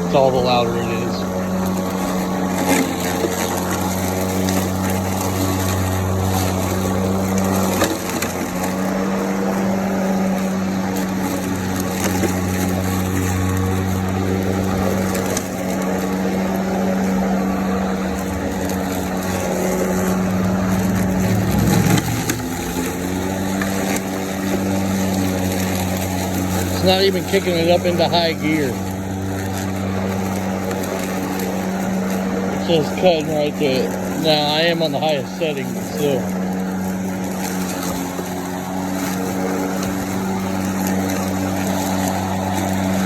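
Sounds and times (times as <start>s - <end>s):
lawn mower motor humming: 0.0s - 43.0s
grass stalks crackling and snapping: 10.4s - 27.4s.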